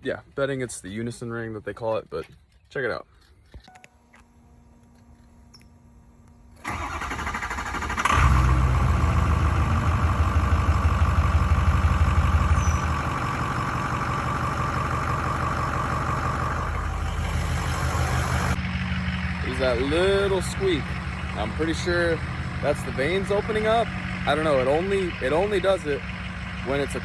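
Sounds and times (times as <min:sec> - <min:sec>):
diesel engine running: 0:05.9 - 0:27.0
diesel engine cranking: 0:06.5 - 0:27.0.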